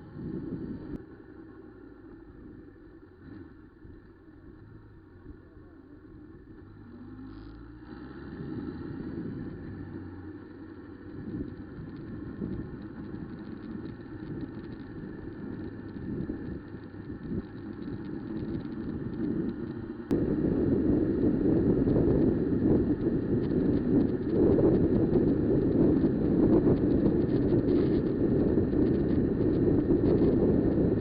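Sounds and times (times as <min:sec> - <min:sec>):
wind buffeting microphone: 0:00.0 - 0:01.0, 0:08.3 - 0:10.2, 0:10.8 - 0:31.0
motorcycle engine: 0:00.0 - 0:31.0
road noise: 0:00.0 - 0:31.0.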